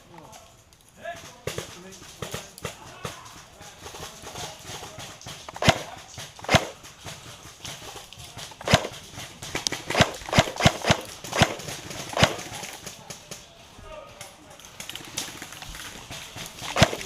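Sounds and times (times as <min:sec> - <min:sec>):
airsoft gun shots: 0:05.5 - 0:06.8, 0:08.6 - 0:12.6, 0:16.6 - 0:17.0.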